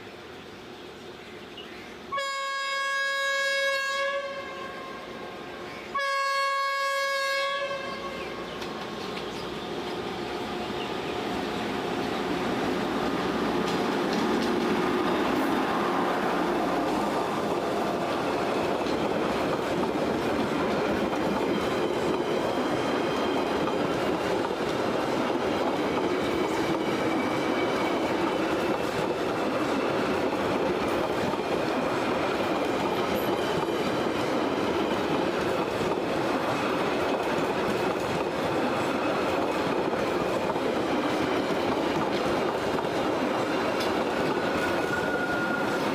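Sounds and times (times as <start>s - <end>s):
train wheels rumbling on rail: 7.5s - 45.9s
wheels clicking over rail joints: 13.0s - 15.4s.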